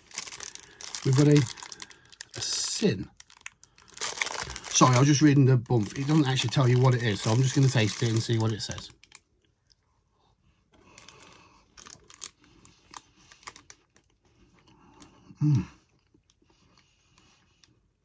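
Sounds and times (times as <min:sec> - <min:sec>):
plastic wrapper crinkling: 0:00.0 - 0:09.2, 0:10.9 - 0:14.2.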